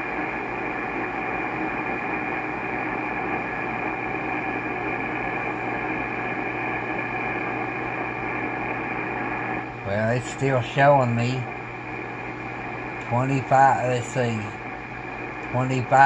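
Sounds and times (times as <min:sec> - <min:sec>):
radio static: 0:01.0 - 0:16.0.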